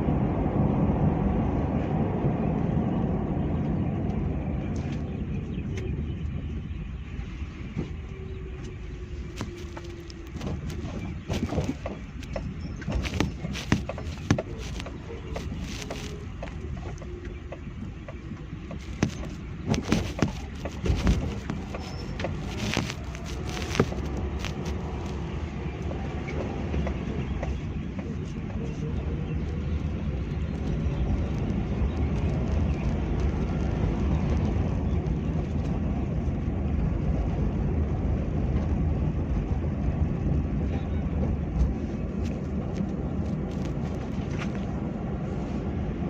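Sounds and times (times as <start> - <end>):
background traffic: 0.0 - 46.0
vehicle rumble: 0.0 - 46.0
sharp clicks and knocks: 9.3 - 25.2.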